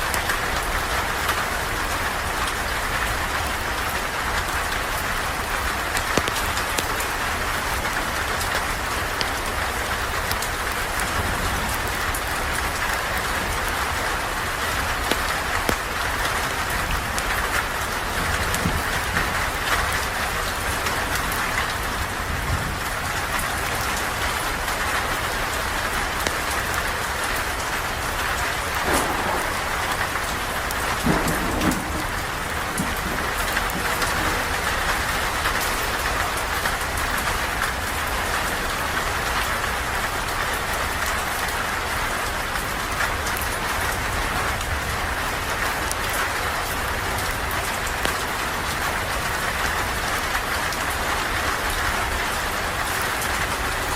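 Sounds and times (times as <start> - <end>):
steady rain falling: 0.0 - 53.9
short loud knocks: 28.8 - 34.7.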